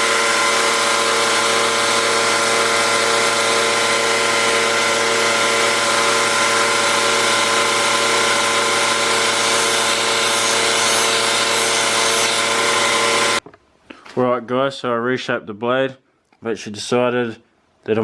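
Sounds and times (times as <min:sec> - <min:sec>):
power tool grinding steel: 0:00.0 - 0:13.4.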